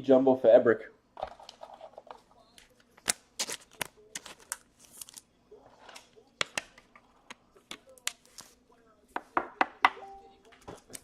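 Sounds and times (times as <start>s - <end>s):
trading cards clicking and snapping: 2.6s - 5.2s.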